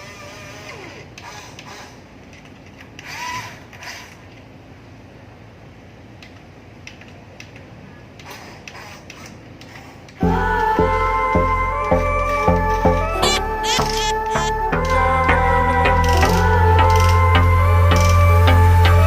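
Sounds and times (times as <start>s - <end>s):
low steady hum: 10.2s - 19.0s.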